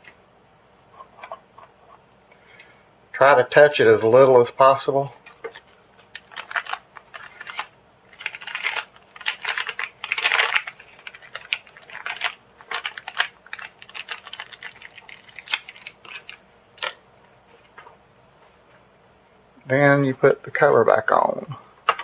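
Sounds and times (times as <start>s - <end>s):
plastic rustling: 5.0s - 17.9s.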